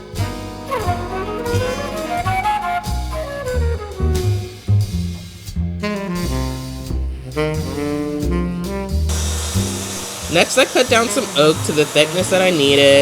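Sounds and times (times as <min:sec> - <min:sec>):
saxophone: 0:00.0 - 0:04.7, 0:05.8 - 0:10.3
jazz music: 0:00.0 - 0:13.0.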